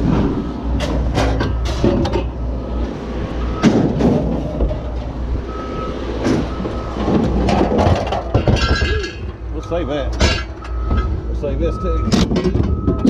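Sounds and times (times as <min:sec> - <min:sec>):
heavy vehicle engine running: 0:00.0 - 0:13.0
metal clanks: 0:00.8 - 0:02.4, 0:06.2 - 0:09.4, 0:10.0 - 0:11.2, 0:12.0 - 0:13.0
reversing alarm beeping: 0:02.3 - 0:03.8, 0:05.4 - 0:07.0, 0:09.6 - 0:13.0.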